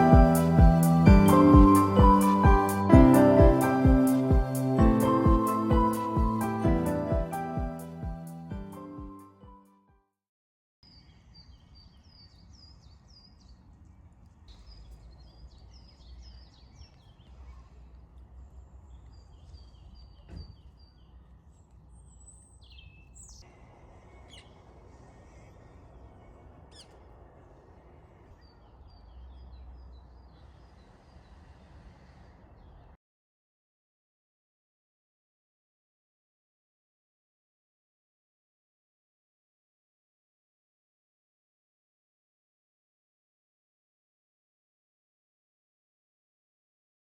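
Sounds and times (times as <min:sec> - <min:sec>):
background music: 0:00.0 - 0:09.7
small birds chirping: 0:10.8 - 0:33.0
low background rumble: 0:11.6 - 0:33.0.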